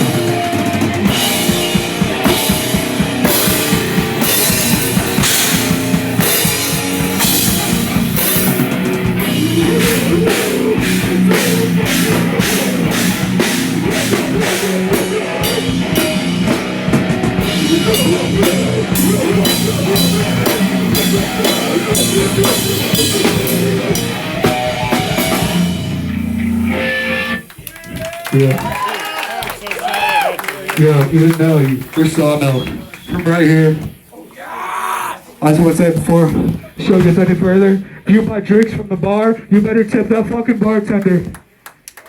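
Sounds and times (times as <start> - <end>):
electric guitars: 0.0 - 28.6
drum kit: 0.0 - 34.1, 35.7 - 41.3
rock band playing loud: 0.0 - 34.1.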